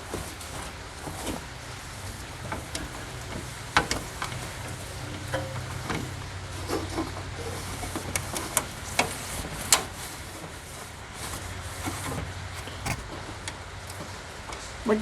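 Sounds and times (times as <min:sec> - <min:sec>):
clicks and knocks in metal toolbox: 0:04.2 - 0:06.1, 0:12.6 - 0:13.5.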